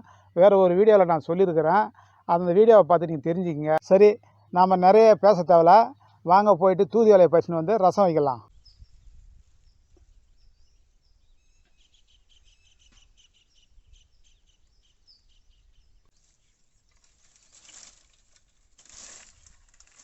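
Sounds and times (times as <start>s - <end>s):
small birds chirping: 3.6s - 6.4s, 8.4s - 18.1s.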